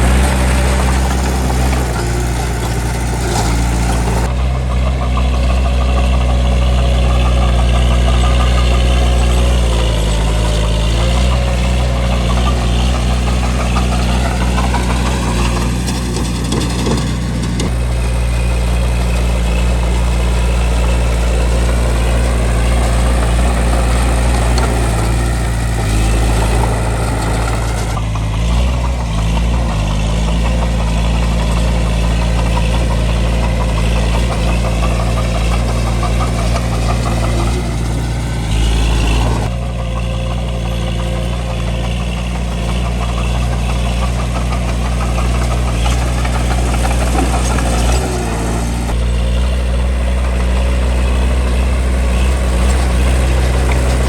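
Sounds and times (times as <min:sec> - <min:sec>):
bulldozer diesel engine running: 0:00.0 - 0:54.0.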